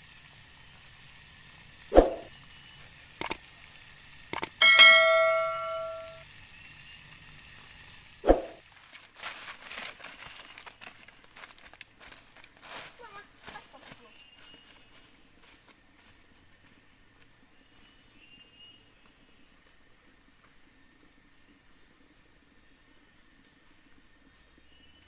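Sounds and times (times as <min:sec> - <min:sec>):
sharp clicks: 0:04.3 - 0:04.6
metallic ring: 0:04.6 - 0:06.2.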